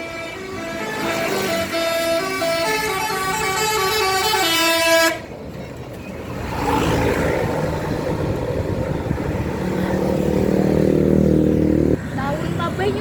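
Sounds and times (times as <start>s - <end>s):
multi-tone bus horn tune: 0.0s - 5.4s
passing traffic noise: 0.0s - 13.0s.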